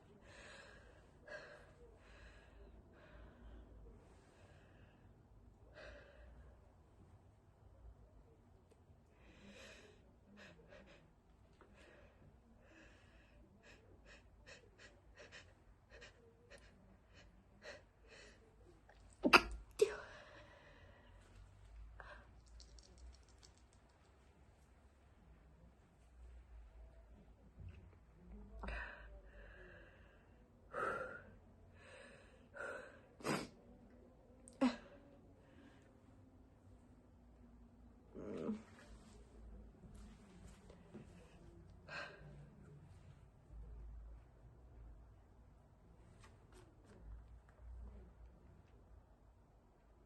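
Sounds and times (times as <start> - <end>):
stifled sneezes: 19.1 - 20.0.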